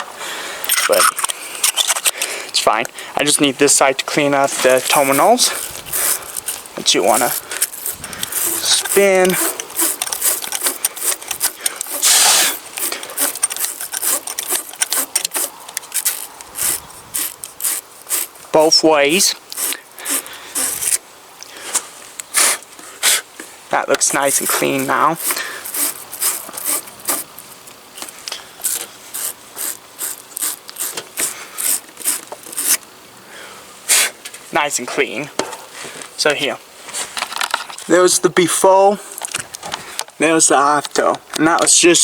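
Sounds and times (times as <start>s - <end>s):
wire brush scraping metal: 4.3s - 21.0s, 24.0s - 32.8s.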